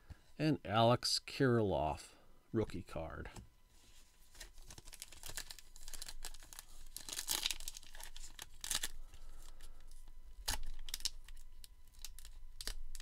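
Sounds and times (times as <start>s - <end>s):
plastic wrapper crinkling: 4.1s - 13.0s.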